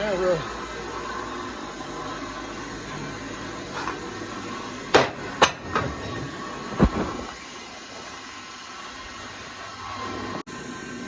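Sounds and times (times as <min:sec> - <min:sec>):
hard objects knocking down: 0:04.9 - 0:07.4.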